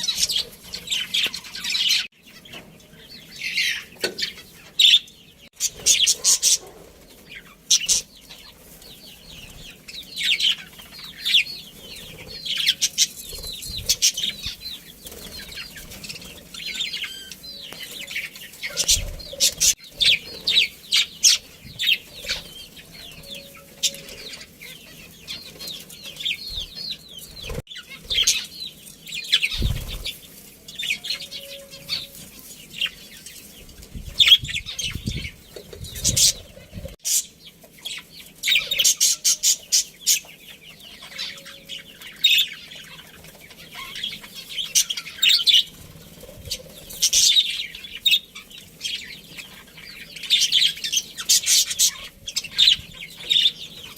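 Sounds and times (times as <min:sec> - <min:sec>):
budgerigars chirping and chattering: 0:00.0 - 0:53.9
wings flapping: 0:11.8 - 0:16.6, 0:29.4 - 0:30.4.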